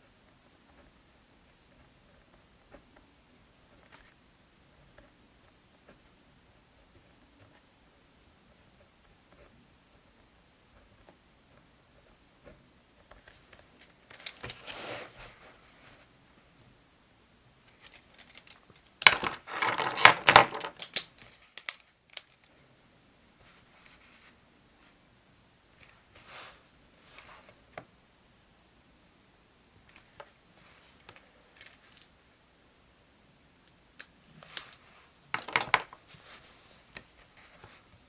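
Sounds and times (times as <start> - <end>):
stationery rustling and clicking: 8.5 - 16.1, 17.7 - 22.6, 29.8 - 32.2, 33.7 - 38.0.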